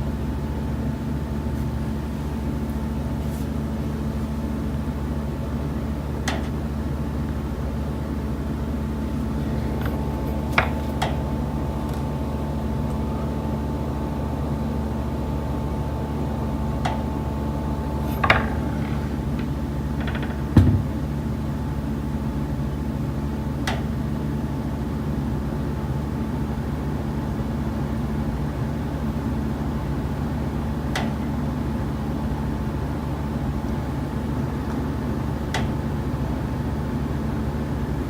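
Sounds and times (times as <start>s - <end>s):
steady mechanical hum: 0.0s - 38.0s
knocks through a building: 18.2s - 21.1s.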